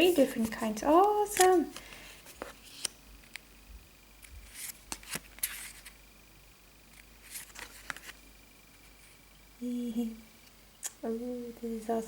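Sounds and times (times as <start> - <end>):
photo cards rustling: 0.0 - 3.5, 4.2 - 6.0, 6.9 - 9.2.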